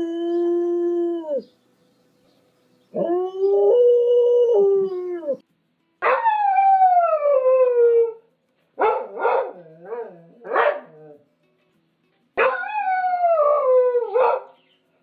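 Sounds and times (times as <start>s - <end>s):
dog barks or yelps: 10.5s - 10.9s.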